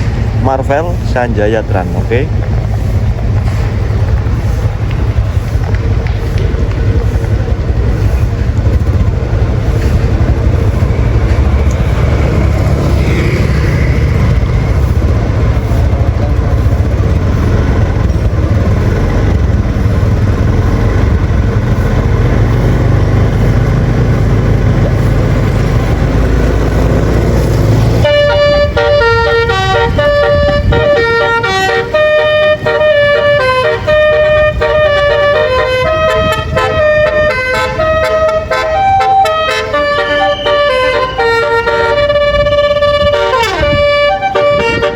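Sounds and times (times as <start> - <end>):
engine and road rumble: 0.0 - 44.9
bus horn playing melody: 26.9 - 44.9.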